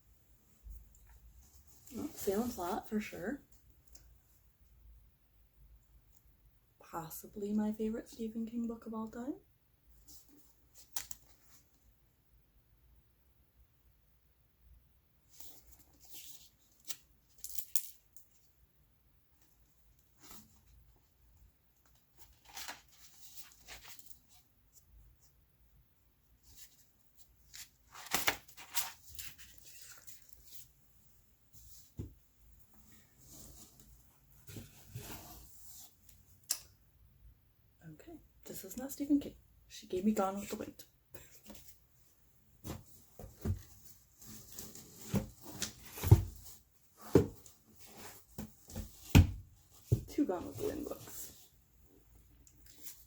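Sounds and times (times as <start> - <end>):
book covers rustling and scraping: 1.4 - 3.1, 26.4 - 30.8, 32.9 - 36.2, 42.6 - 51.6
books thudding down: 48.4 - 50.1.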